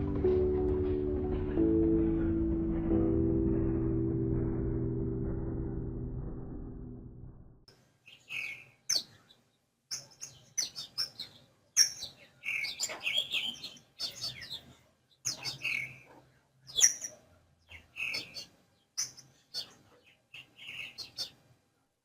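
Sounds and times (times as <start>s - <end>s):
small songbirds chirping: 8.0s - 21.6s.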